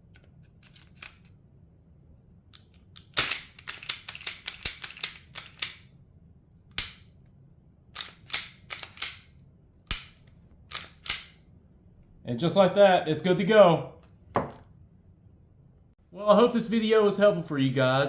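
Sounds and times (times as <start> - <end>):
pistol slide metal clicks: 2.6 - 5.9, 6.7 - 7.1, 8.0 - 9.3, 9.9 - 11.4.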